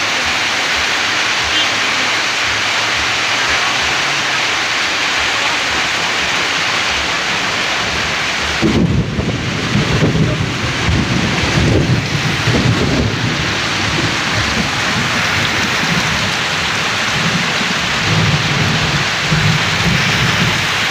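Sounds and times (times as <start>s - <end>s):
heavy rain pouring: 0.0s - 20.9s
low rumbling: 6.2s - 20.9s.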